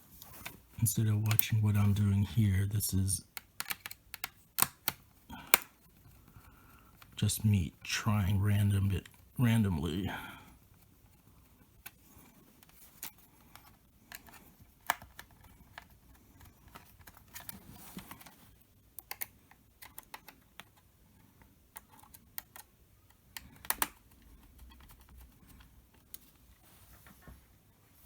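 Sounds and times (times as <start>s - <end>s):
clicks and taps of laptop parts: 3.3s - 5.8s, 13.5s - 18.3s, 19.0s - 20.8s, 21.4s - 25.2s.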